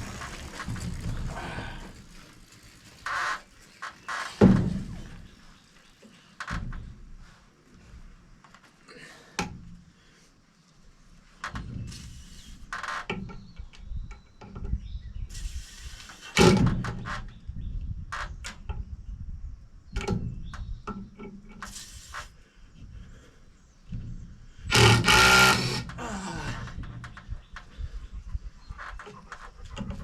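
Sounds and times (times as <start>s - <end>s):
timber knocks and clunks: 0.0s - 5.6s, 6.4s - 8.6s, 16.3s - 18.9s, 19.9s - 21.7s, 23.8s - 28.0s
short rasping bursts: 24.7s - 26.1s.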